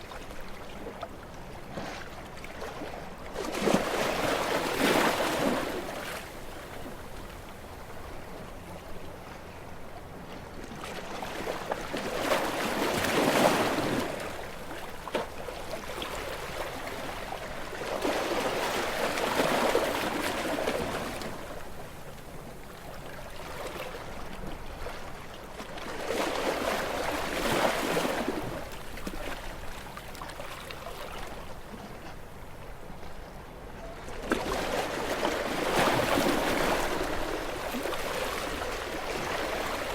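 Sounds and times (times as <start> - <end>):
waves breaking against rocks: 2.6 - 6.4, 10.9 - 21.5, 23.4 - 31.4, 34.2 - 39.9.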